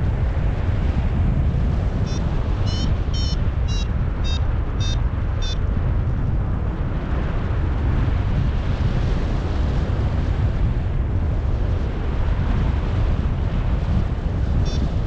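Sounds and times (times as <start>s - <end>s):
strong wind on microphone: 0.0s - 15.0s
variometer beeping chirps: 2.1s - 5.6s, 14.6s - 14.9s.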